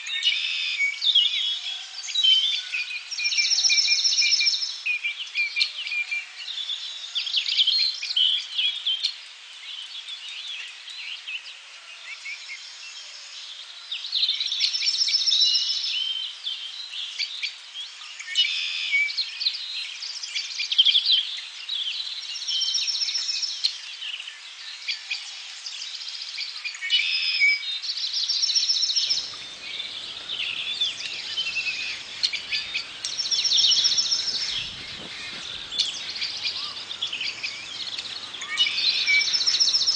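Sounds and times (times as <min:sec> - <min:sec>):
wild birds chirping and trilling: 0:21.3 - 0:39.9
low rushing noise: 0:29.1 - 0:39.9.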